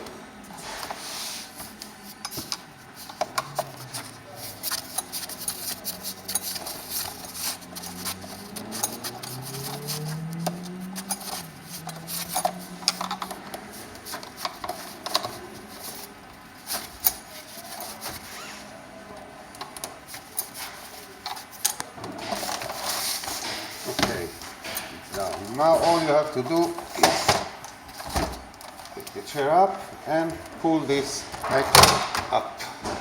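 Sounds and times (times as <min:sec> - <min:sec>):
tool clicks and metallic taps: 0:01.6 - 0:15.9
low hum rising in pitch: 0:08.3 - 0:13.5.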